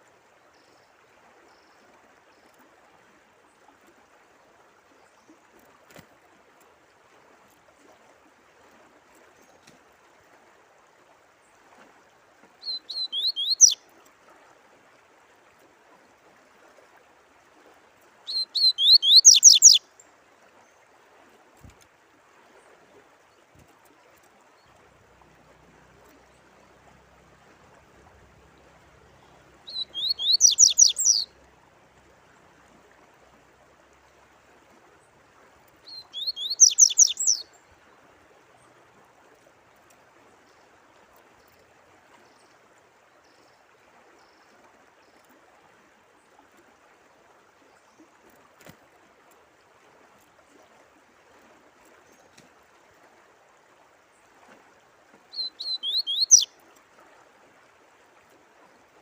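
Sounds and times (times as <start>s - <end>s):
faint trickle of running water: 0.0s - 59.0s
songbird singing: 12.6s - 13.8s, 18.3s - 19.8s, 27.8s - 31.5s, 35.7s - 37.8s, 55.3s - 56.6s.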